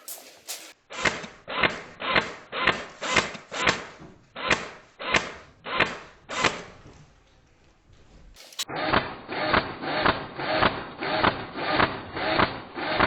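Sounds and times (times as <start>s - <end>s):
footsteps walking: 0.0s - 0.8s, 6.8s - 8.7s.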